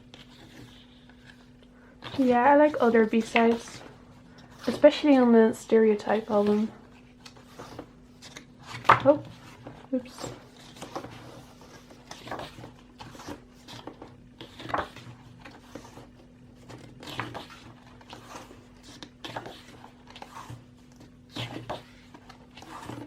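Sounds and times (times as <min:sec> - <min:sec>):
paper rustling: 0:00.0 - 0:05.3, 0:05.9 - 0:23.0
steady low hum: 0:00.0 - 0:23.0.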